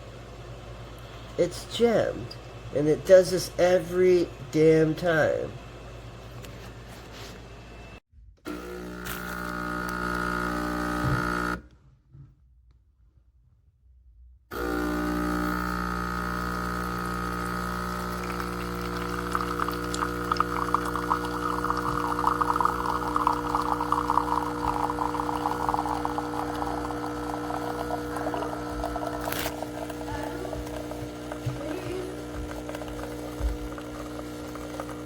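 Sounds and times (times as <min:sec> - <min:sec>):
coffee grinder motor humming: 0:08.5 - 0:11.6, 0:14.5 - 0:35.0
beans crackling in grinder: 0:17.2 - 0:35.0.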